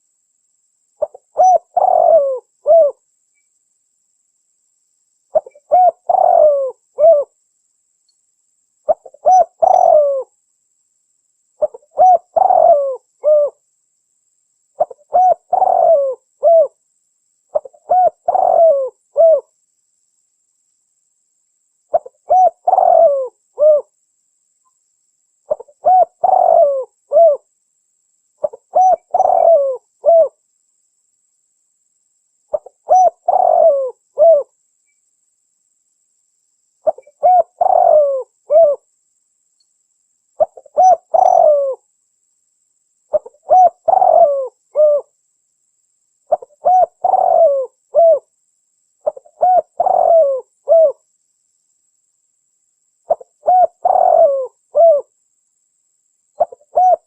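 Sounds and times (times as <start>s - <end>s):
dove cooing: 1.0s - 3.0s, 5.3s - 7.3s, 8.9s - 10.3s, 11.6s - 13.6s, 14.8s - 16.8s, 17.5s - 19.5s, 21.9s - 23.9s, 25.5s - 27.5s, 28.4s - 30.4s, 32.5s - 34.5s, 36.8s - 38.8s, 40.4s - 41.8s, 43.1s - 45.1s, 46.3s - 48.3s, 49.0s - 51.0s, 53.1s - 55.1s, 56.4s - 57.0s.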